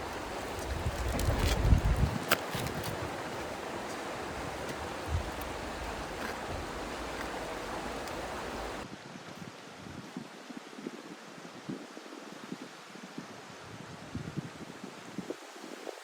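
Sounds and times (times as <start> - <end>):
flowing water rushing: 0.0 - 8.9.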